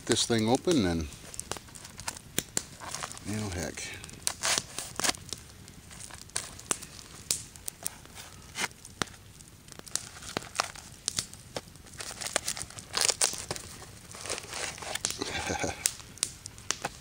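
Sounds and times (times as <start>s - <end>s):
packaging crackling: 0.6s - 17.0s
packaging tearing: 1.6s - 2.2s, 4.2s - 5.3s, 9.8s - 15.9s.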